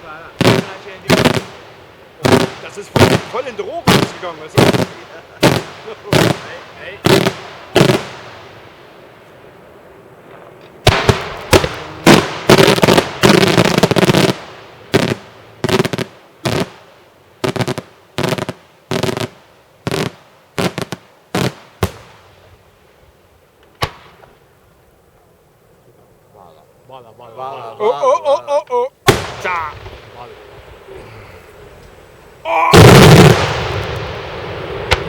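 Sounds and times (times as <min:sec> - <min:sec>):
fireworks bursting in loud bangs: 0:00.0 - 0:08.9, 0:10.2 - 0:22.5, 0:23.6 - 0:24.4, 0:29.0 - 0:31.0, 0:32.7 - 0:35.0.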